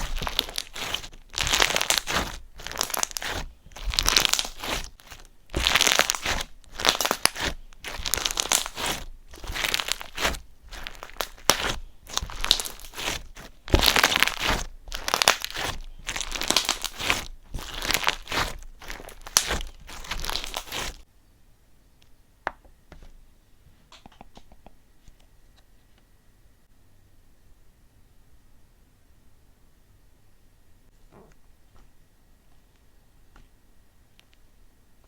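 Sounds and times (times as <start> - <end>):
crinkling and crunching by hand: 0.0 - 21.0.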